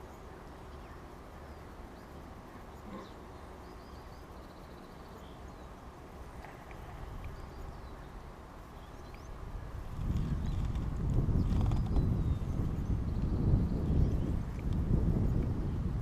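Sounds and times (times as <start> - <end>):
faint small birds chirping: 0.0 - 15.5
wind rumble on microphone: 6.2 - 16.0.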